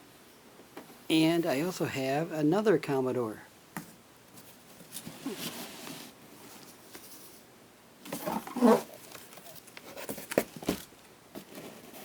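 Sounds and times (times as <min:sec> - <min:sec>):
scrape: 0:05.0 - 0:07.4, 0:11.4 - 0:12.0.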